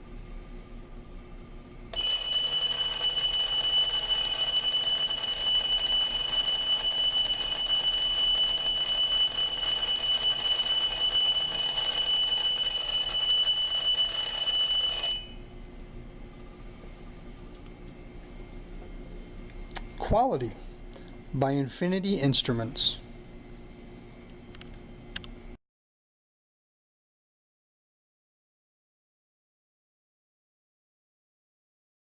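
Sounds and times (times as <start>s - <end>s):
alarm clock bell ringing: 2.0s - 15.7s.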